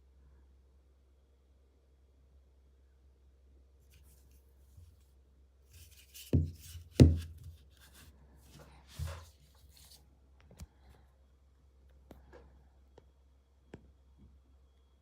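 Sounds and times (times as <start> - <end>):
dull thumps: 6.2 - 7.6.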